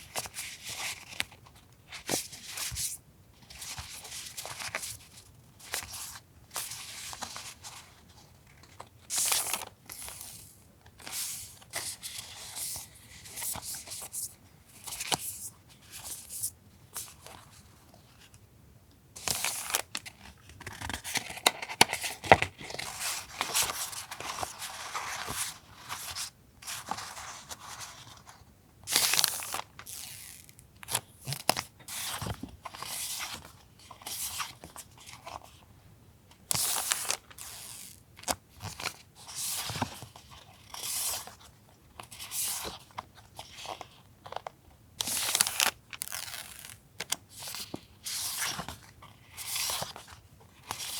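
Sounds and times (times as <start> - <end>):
paper rustling and crinkling: 19.2 - 28.4.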